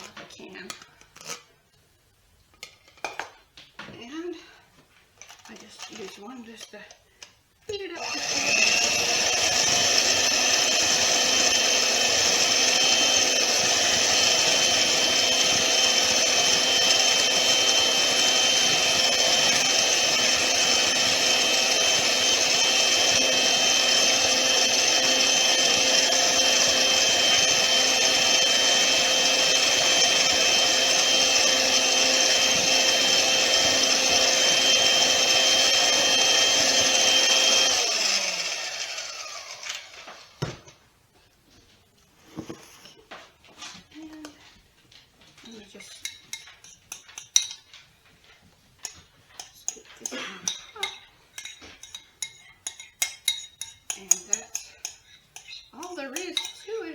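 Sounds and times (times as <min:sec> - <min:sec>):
electric hand mixer whining: 0:07.9 - 0:40.8, 0:49.4 - 0:56.9.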